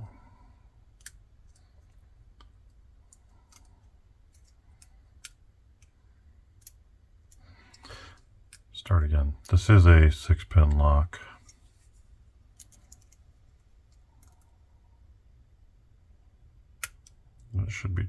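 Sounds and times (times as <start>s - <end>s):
lock pick clicking in lock: 16.8s - 17.2s.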